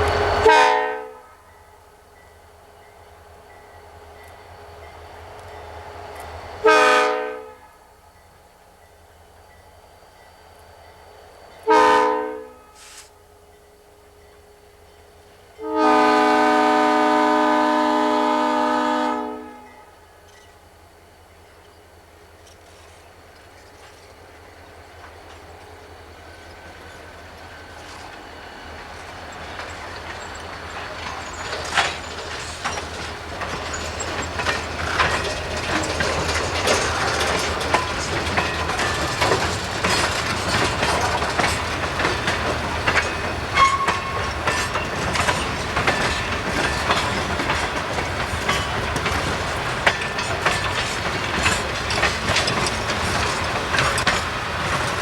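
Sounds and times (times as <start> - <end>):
train rolling past: 0.0 - 55.0
wheels clicking over rail joints: 21.6 - 55.0.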